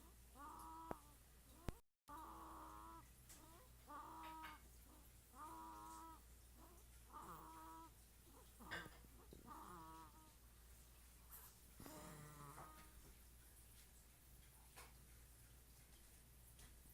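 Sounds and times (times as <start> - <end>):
high-pitched short snores: 11.8 - 12.8.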